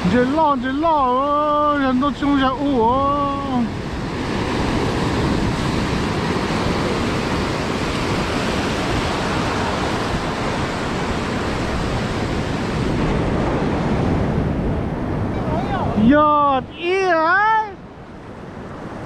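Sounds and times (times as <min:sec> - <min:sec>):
wind noise on microphone: 0:00.0 - 0:16.9
ocean surf on beach: 0:00.0 - 0:19.0.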